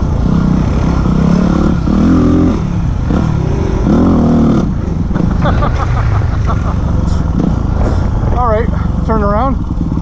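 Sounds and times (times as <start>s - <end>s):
motorcycle engine revving: 0.0s - 10.0s.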